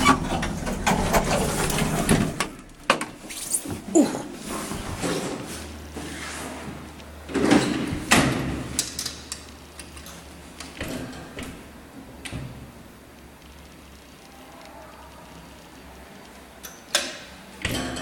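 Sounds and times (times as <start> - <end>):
elevator doors sliding: 0.0 - 2.6.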